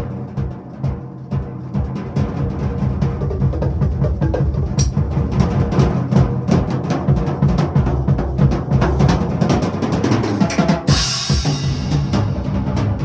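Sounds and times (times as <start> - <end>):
drum rolls on low drums: 0.0 - 13.0
sharp cymbal hit: 10.9 - 12.4.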